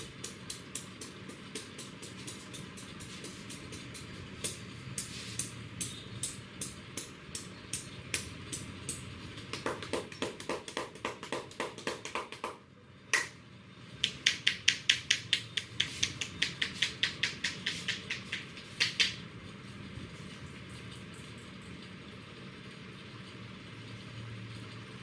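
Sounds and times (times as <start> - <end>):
rapid hand tapping: 0.0 - 4.6, 5.4 - 12.6, 14.0 - 19.2.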